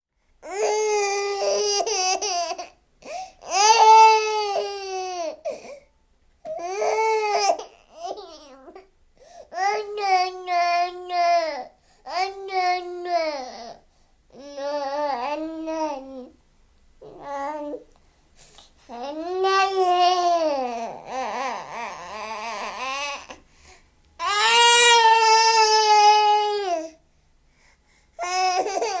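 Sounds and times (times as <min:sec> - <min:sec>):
baby crying: 0:00.4 - 0:05.7, 0:06.5 - 0:08.8, 0:18.9 - 0:23.4, 0:24.2 - 0:27.0, 0:28.2 - 0:29.0.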